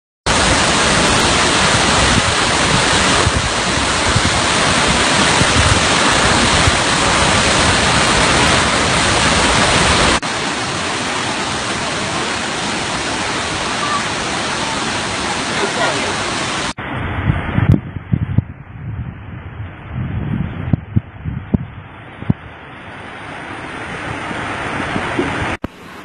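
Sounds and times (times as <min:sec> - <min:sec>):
waterfall rushing: 0:00.3 - 0:16.8, 0:22.0 - 0:26.0.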